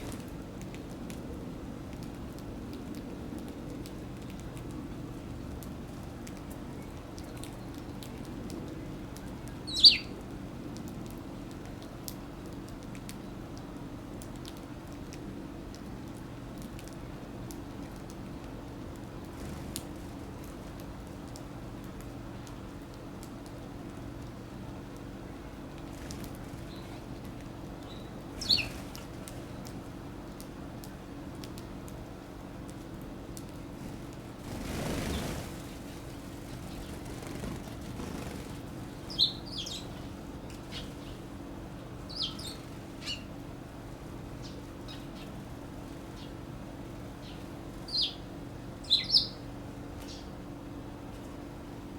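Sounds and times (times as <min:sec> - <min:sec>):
sparrows pecking at seed: 0:00.0 - 0:43.5
steady low hum: 0:00.0 - 0:51.9
sparrow chirps: 0:09.6 - 0:10.1, 0:27.8 - 0:28.8, 0:39.0 - 0:41.2, 0:42.1 - 0:43.3, 0:47.2 - 0:48.2, 0:48.8 - 0:49.4.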